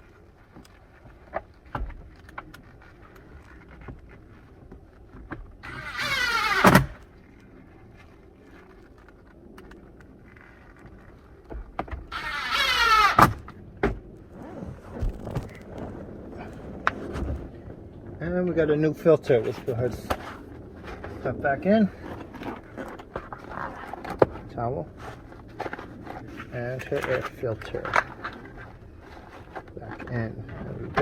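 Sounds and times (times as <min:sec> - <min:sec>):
small electric motor whirring: 0:05.6 - 0:07.0, 0:12.1 - 0:13.4.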